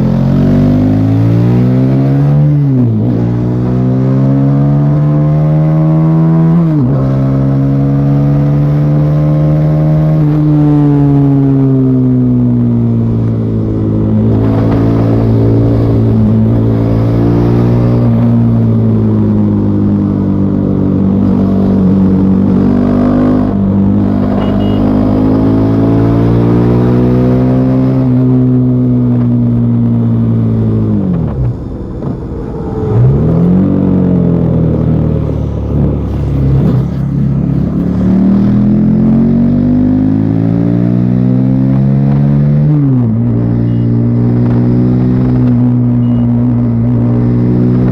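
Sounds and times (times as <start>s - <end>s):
motorcycle engine revving: 0.0s - 47.9s.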